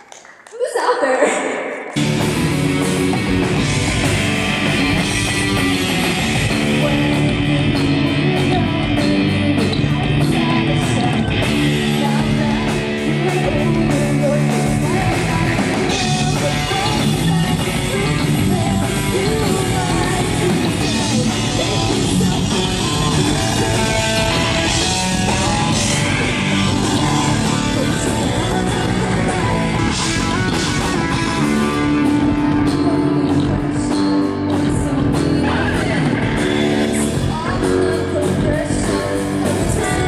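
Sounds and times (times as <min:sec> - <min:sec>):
electric guitar: 0:01.7 - 0:40.0
loud rock music: 0:01.9 - 0:40.0
person singing: 0:04.6 - 0:40.0.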